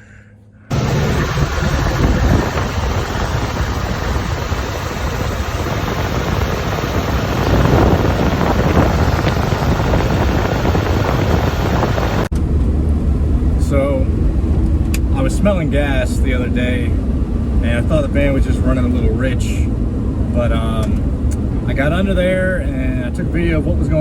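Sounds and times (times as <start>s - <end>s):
wind buffeting microphone: 0.7s - 13.5s.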